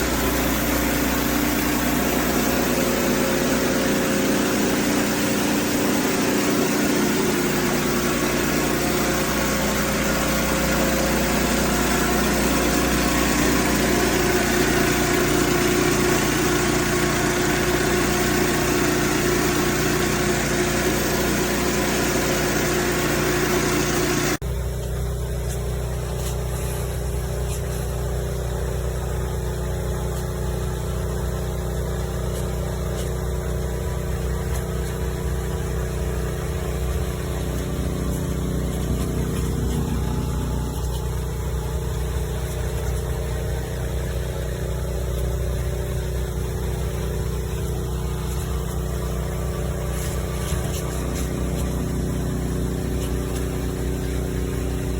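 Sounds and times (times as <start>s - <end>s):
pressure washer spraying: 0.0s - 24.4s, 30.0s - 54.9s.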